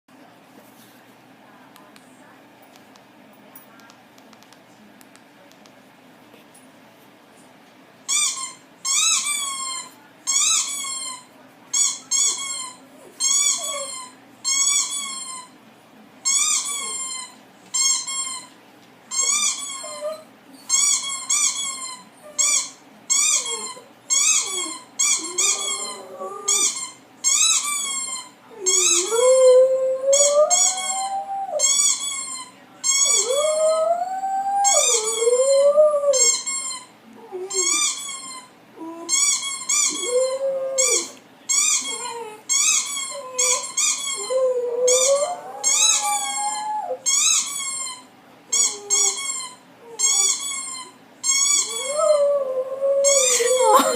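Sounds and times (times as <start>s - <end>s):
squeaky toy squeaking: 8.1s - 15.6s, 16.2s - 18.5s, 19.1s - 29.2s, 31.6s - 33.4s, 34.7s - 35.3s, 36.1s - 36.9s, 37.5s - 52.1s
dog howling: 24.5s - 26.6s, 28.5s - 31.8s, 33.1s - 36.4s, 39.9s - 41.2s, 43.1s - 47.1s, 51.5s - 53.9s.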